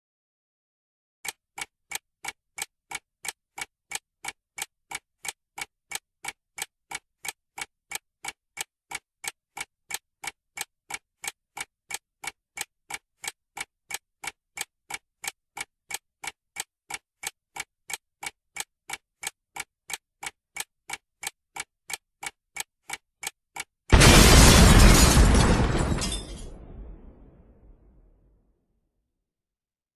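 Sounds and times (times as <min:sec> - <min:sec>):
clock ticking: 0:01.2 - 0:25.7
bomb explosion: 0:24.0 - 0:27.7.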